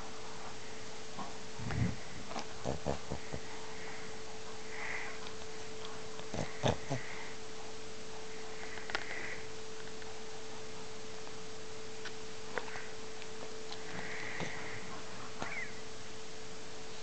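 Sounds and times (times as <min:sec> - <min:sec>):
dog snoring: 0:01.6 - 0:04.0, 0:06.2 - 0:07.4.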